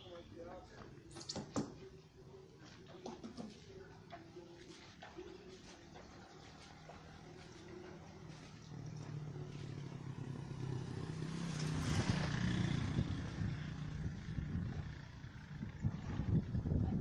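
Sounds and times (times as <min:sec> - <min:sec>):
vehicle engine passing by: 0:05.8 - 0:16.7.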